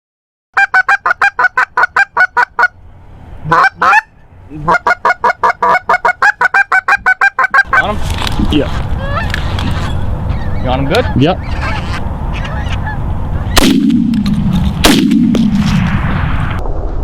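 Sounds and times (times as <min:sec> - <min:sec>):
goose honking: 0:03.4 - 0:08.0, 0:08.7 - 0:13.6.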